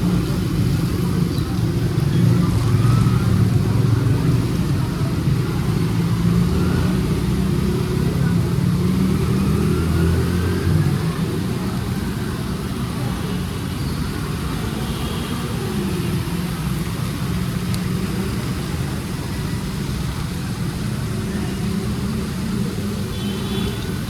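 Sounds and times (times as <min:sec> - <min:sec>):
steady traffic hiss: 0:00.0 - 0:24.0
vehicles passing: 0:00.0 - 0:24.0.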